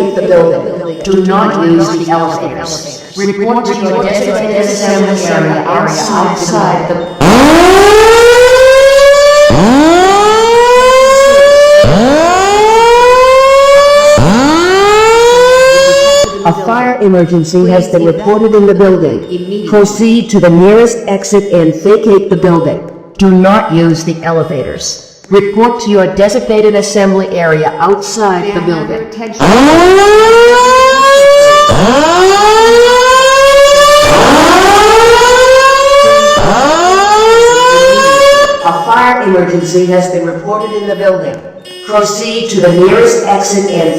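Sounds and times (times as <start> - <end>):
recorded evacuation announcements: 0.0 - 43.9
slow-whoop alarm tone: 3.7 - 16.5, 29.4 - 38.9.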